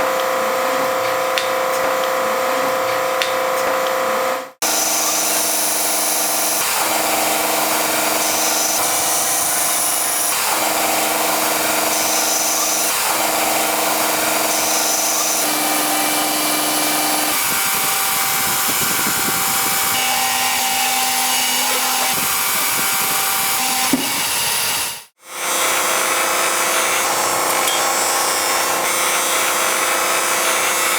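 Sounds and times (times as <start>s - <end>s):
electric power tool on steel: 4.6s - 30.9s.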